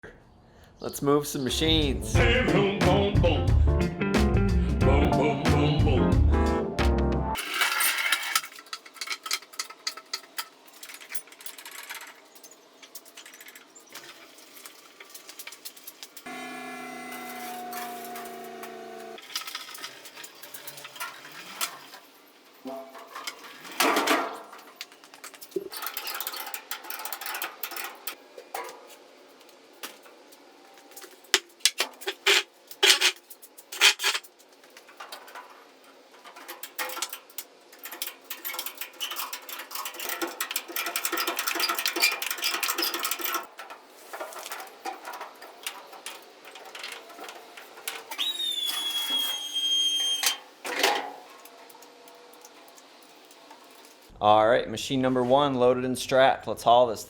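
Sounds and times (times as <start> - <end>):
clanks clicks and scraping: 7.4 - 16.4, 17.2 - 29.0, 29.8 - 49.4, 50.0 - 54.1
high squeal: 48.1 - 50.4.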